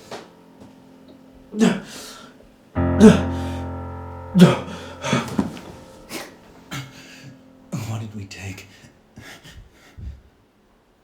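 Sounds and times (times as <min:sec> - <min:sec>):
guitar chord ringing: 0:00.0 - 0:09.2.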